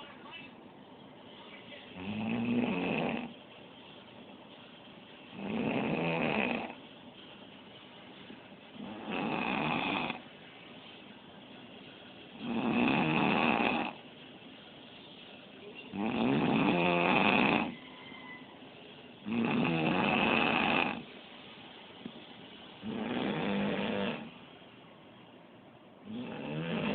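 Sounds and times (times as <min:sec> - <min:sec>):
man snoring: 0:02.0 - 0:03.3, 0:05.4 - 0:06.8, 0:08.8 - 0:10.2, 0:12.4 - 0:14.0, 0:16.0 - 0:17.7, 0:19.3 - 0:21.0, 0:22.8 - 0:24.3, 0:26.1 - 0:26.9.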